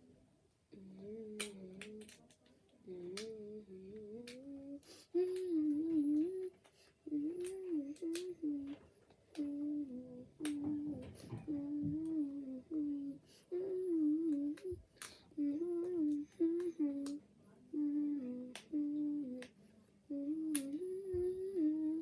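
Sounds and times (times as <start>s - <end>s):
child humming: 0.7s - 2.2s, 2.8s - 22.0s
plastic toy bricks clicking: 1.3s - 2.5s.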